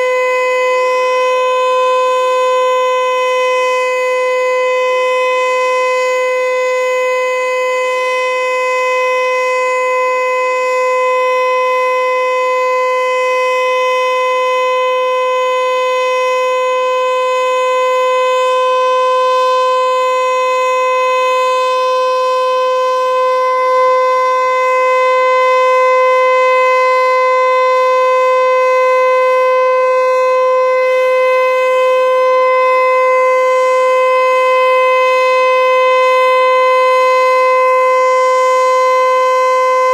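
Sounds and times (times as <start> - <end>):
electronic warning siren steady tone: 0.0 - 39.9.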